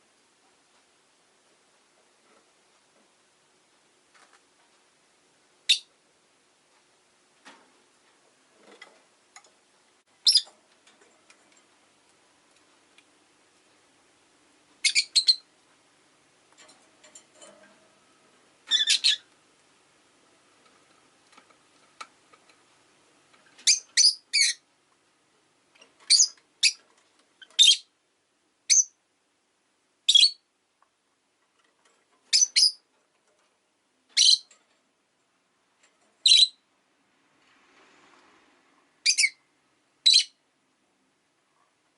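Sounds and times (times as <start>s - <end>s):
lovebird chirping: 5.6s - 5.9s, 10.2s - 10.5s, 14.8s - 15.5s, 18.7s - 19.3s, 23.6s - 24.6s, 26.1s - 26.8s, 27.4s - 27.9s, 28.7s - 29.0s, 30.1s - 30.5s, 32.3s - 32.9s, 34.1s - 34.5s, 36.2s - 36.6s, 39.0s - 39.4s, 40.0s - 40.4s.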